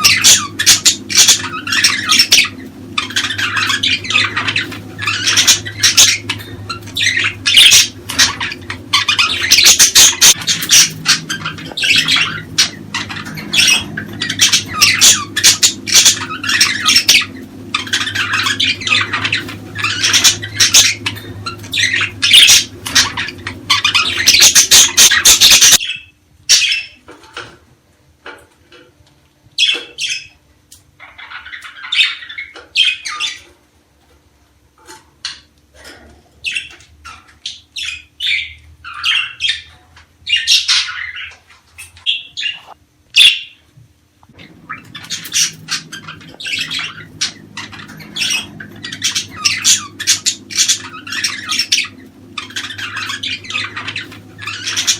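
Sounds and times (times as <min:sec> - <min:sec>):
budgerigars chattering: 0:00.0 - 0:27.0, 0:36.4 - 0:43.6, 0:44.4 - 0:54.9.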